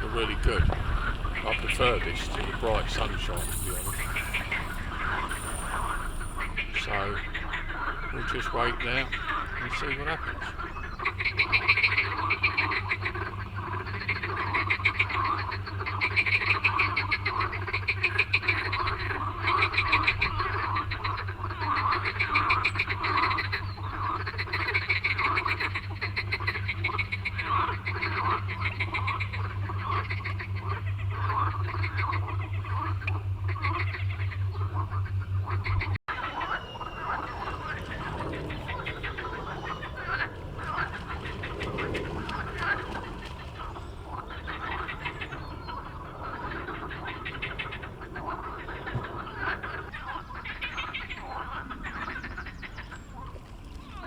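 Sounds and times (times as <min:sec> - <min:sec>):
steady low hum: 0:00.0 - 0:14.9, 0:27.5 - 0:53.3
frogs croaking: 0:00.0 - 0:54.0.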